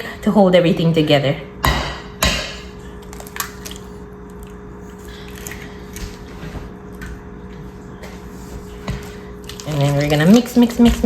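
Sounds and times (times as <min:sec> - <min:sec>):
steady low hum: 0:00.0 - 0:11.0
soft wet squishing: 0:02.8 - 0:11.0.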